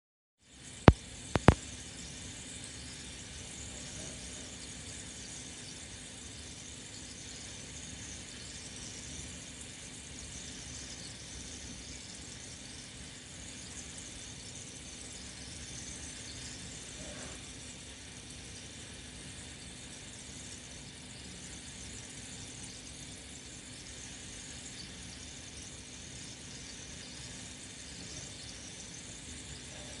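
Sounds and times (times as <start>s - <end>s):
aquarium water hiss: 0.4s - 30.0s
faint steady hum: 0.4s - 30.0s
faint steady tone: 0.4s - 30.0s.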